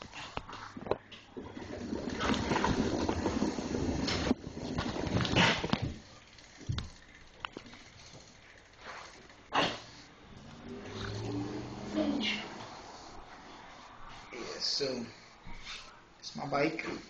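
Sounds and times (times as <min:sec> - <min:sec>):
bike freewheel ratcheting clicks: 0:04.0 - 0:09.4.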